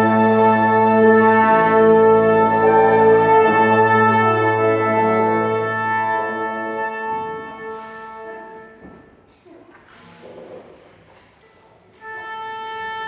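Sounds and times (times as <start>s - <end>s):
ensemble holding sustained chord: 0.0s - 8.8s.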